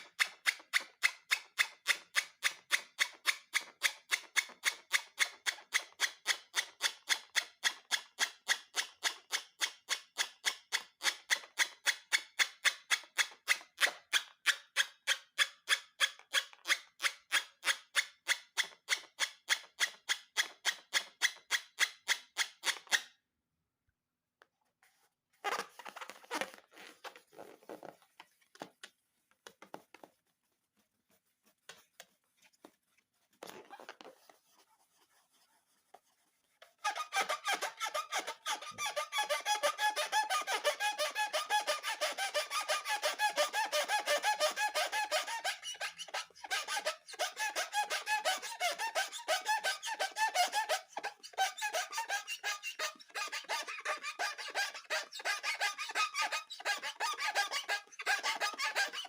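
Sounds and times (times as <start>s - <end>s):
rubber balloons squeaking: 25.4s - 28.4s, 33.4s - 34.3s, 36.7s - 59.0s.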